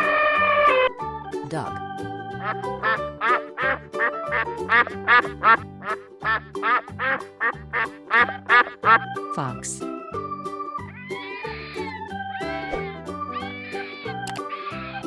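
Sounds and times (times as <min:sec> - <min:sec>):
background music: 0:00.0 - 0:15.0
duck quacking: 0:02.8 - 0:09.1.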